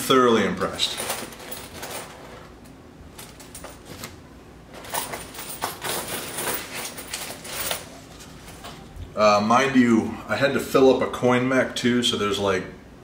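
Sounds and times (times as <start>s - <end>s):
coins clicking and clinking: 0.8s - 2.4s, 4.7s - 8.6s.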